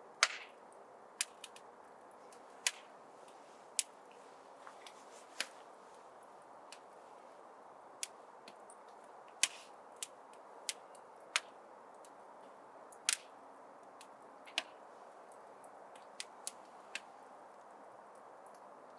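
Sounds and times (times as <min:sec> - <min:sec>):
fire popping: 0:00.1 - 0:18.9
fire hissing: 0:01.2 - 0:13.4.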